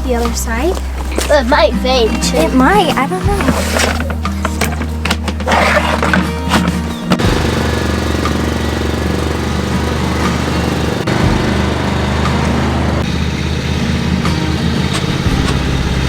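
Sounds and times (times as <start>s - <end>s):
small engine running: 7.0s - 16.0s.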